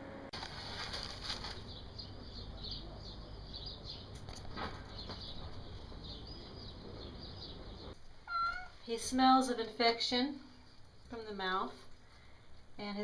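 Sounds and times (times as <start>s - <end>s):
small birds chirping: 1.0s - 9.0s.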